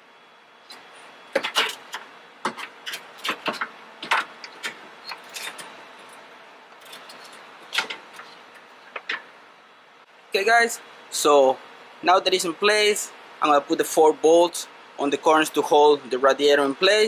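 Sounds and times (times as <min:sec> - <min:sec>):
radiator clicks and knocks: 0:01.3 - 0:05.6, 0:06.9 - 0:09.3.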